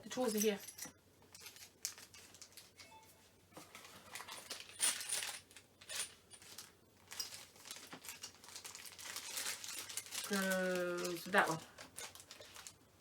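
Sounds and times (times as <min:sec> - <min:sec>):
metal fixings clinking: 0:00.0 - 0:12.6
metallic rings: 0:00.1 - 0:01.8.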